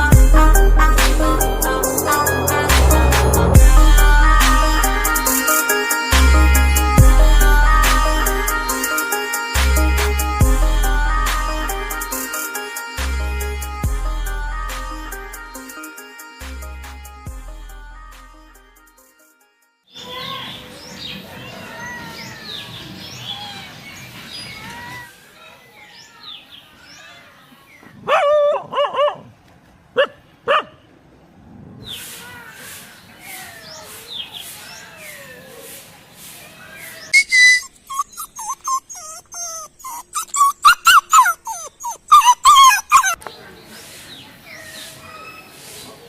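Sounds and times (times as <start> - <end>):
dog barking: 28.0 - 29.3, 30.0 - 30.8, 37.2 - 43.2
dog yelping and whimpering: 37.1 - 43.2.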